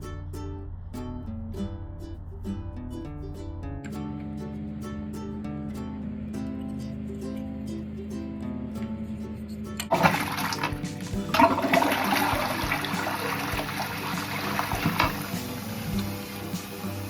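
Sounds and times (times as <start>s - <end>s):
quiet guitar music: 0.0s - 17.0s
toilet flushing: 9.9s - 17.0s.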